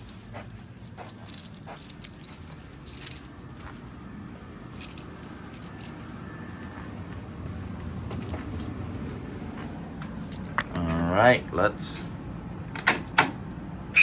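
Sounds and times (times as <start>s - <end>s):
keys jangling: 0.0s - 3.9s, 4.6s - 6.7s, 10.2s - 10.8s, 12.8s - 13.8s.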